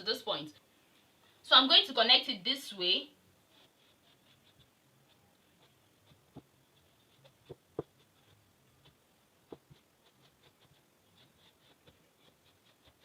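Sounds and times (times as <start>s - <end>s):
chalk scratching on fabric: 3.4s - 13.0s.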